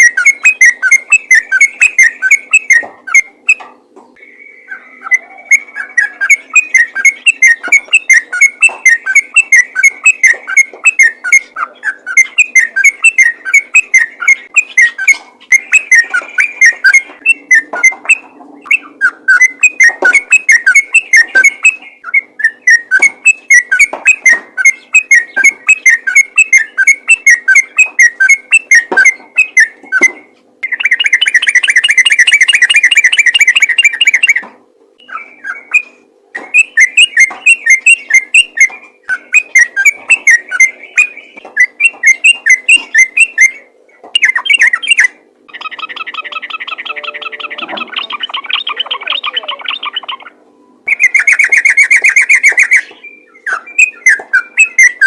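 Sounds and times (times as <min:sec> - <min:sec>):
bulbul singing fast notes: 0:04.2 - 0:34.4, 0:35.0 - 0:55.0.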